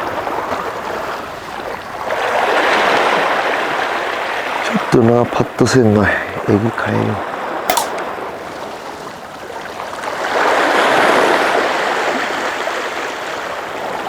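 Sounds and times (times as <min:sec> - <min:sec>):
sharp click: 0:07.7 - 0:08.1.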